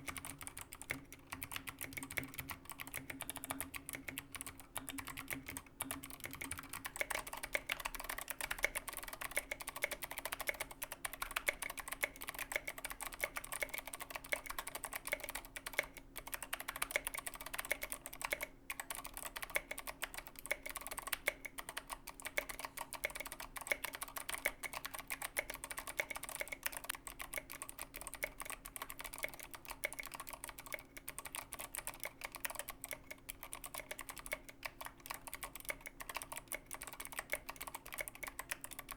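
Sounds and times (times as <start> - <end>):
faint steady hum: 0.0 - 38.9
fast typing on mechanical keyboard: 0.0 - 38.9.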